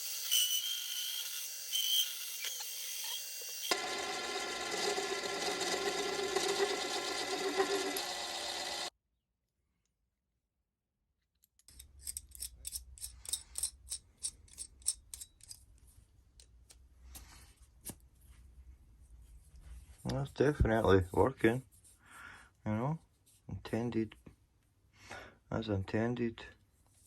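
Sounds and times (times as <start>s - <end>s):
lathe motor whine: 0.0s - 8.9s.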